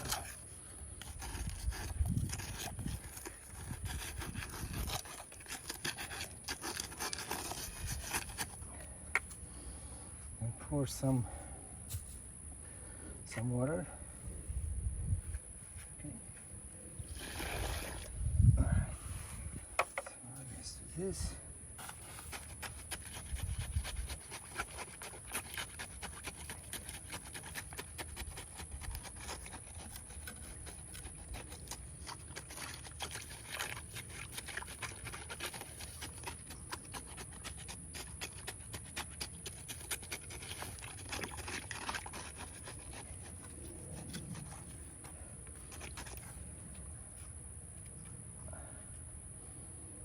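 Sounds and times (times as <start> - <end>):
concrete scraping and crunching: 0.0 - 9.4, 16.9 - 20.2, 21.0 - 47.4.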